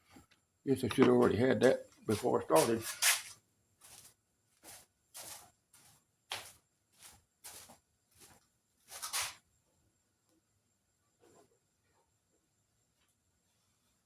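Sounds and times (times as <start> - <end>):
footsteps walking: 0.8 - 9.3.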